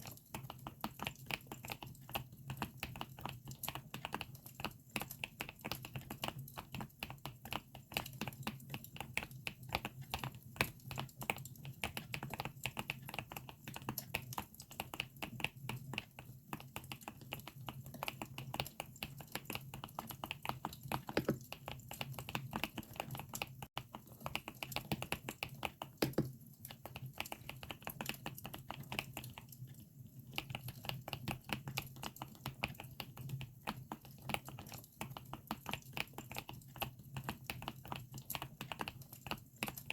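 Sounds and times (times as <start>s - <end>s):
mechanical keyboard key clacks: 26.0s - 26.3s.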